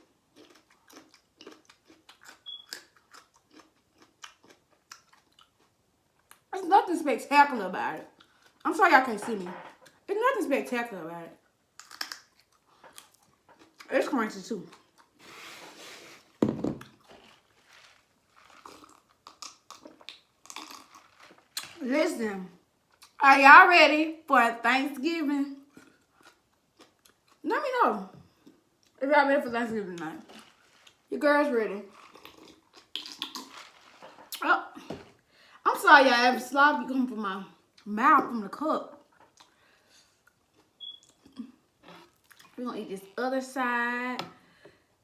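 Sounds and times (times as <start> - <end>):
person chewing crunchy food: 0.0 - 6.5, 11.8 - 13.9, 14.7 - 15.4, 16.8 - 21.8, 25.7 - 27.4, 30.3 - 31.1, 31.9 - 34.4.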